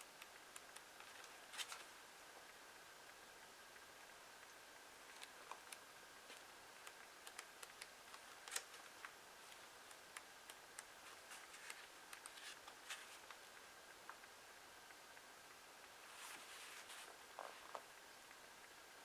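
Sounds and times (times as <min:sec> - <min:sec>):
paper pages handled: 0:01.0 - 0:01.9, 0:05.1 - 0:13.4, 0:16.1 - 0:17.8.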